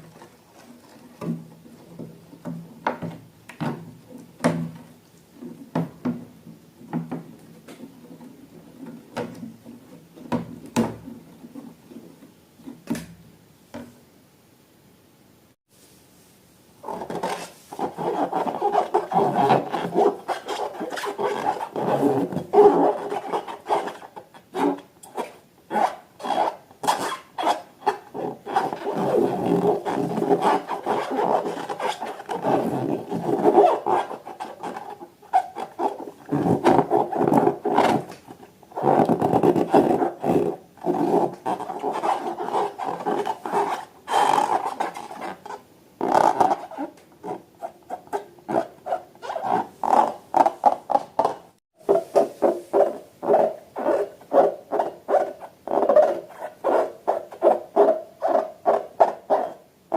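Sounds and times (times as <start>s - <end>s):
rubbery squeaking and squishing: 16.8s - 59.9s.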